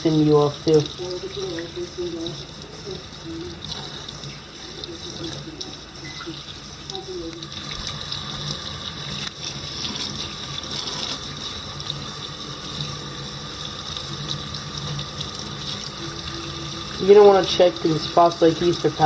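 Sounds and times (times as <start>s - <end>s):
tap water running into sink: 0.0s - 19.0s.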